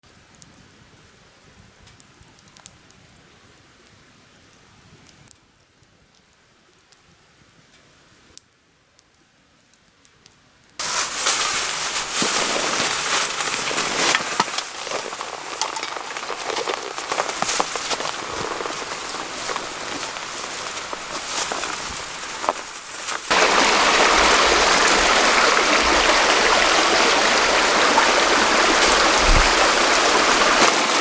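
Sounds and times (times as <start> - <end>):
faint outdoor ambience: 0.2 - 31.0
campfire crackling and popping: 10.8 - 31.0.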